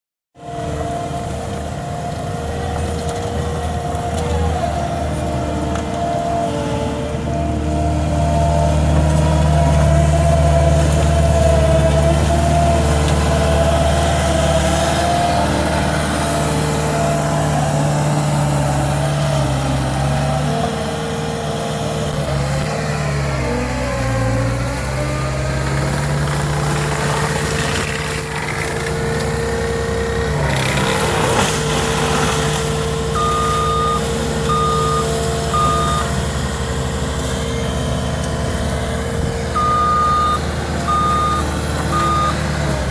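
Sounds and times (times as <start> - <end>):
diesel engine running: 0.4 - 42.9
reversing alarm beeps: 33.2 - 36.2, 39.6 - 42.4.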